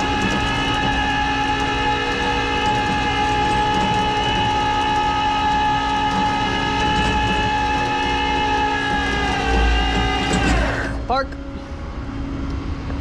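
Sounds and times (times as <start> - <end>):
hydraulic winch whining: 0.0 - 11.2
truck engine running: 0.0 - 13.0.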